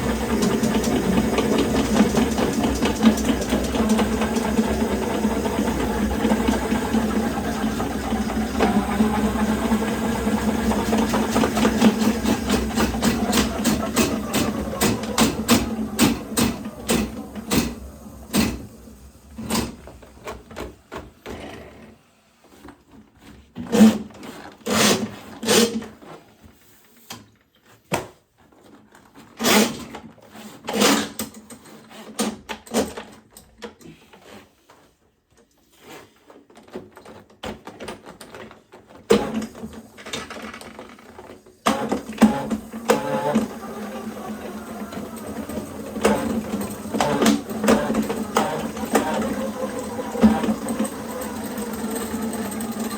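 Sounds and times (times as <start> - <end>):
motorized drain snake running: 0.0 - 20.6, 39.1 - 52.9
cable and tools clanking: 0.1 - 18.7, 36.5 - 52.9.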